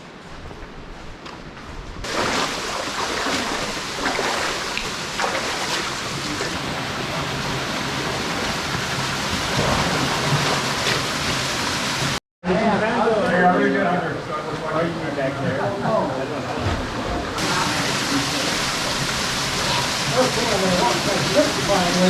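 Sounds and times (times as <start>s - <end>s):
wind: 0.0s - 22.0s
river water rushing: 2.0s - 12.2s.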